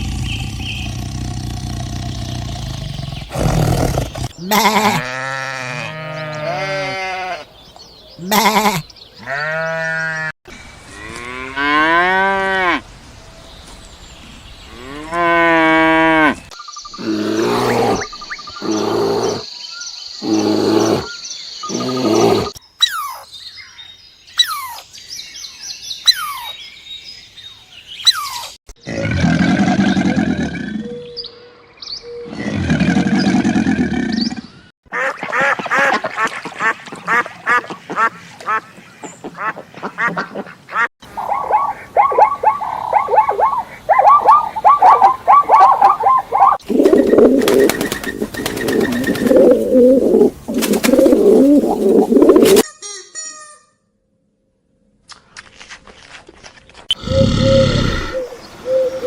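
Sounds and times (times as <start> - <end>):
chirping glides: 0.0 - 5.0, 41.0 - 52.6
long low animal calls: 0.0 - 5.1, 41.1 - 47.6, 56.9 - 59.0
rapid repeated calls: 41.0 - 52.7.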